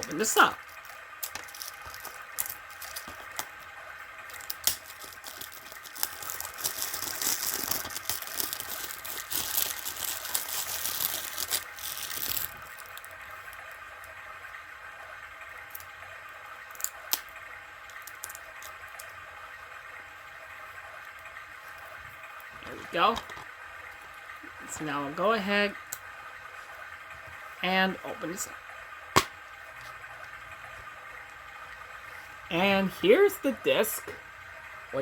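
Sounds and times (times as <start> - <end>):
plastic wrap crinkling and tearing: 0.6 - 3.6, 4.2 - 13.6, 17.9 - 19.0.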